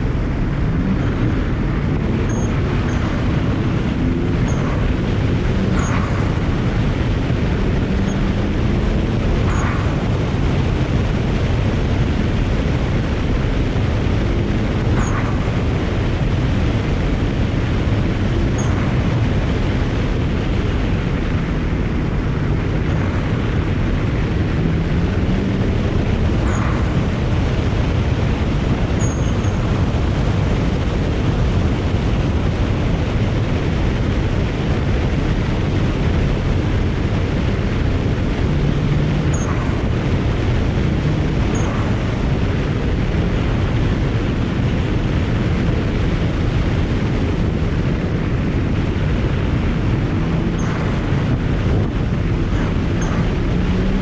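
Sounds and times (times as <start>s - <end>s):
car engine accelerating and shifting: 0.0s - 33.4s, 45.9s - 54.0s.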